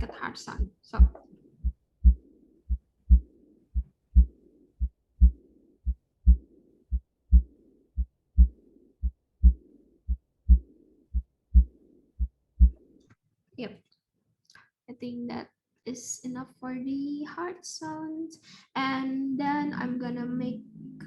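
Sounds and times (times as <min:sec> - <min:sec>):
heartbeat lub-dub: 0:01.0 - 0:12.9
hissing heart murmur: 0:04.2 - 0:06.5.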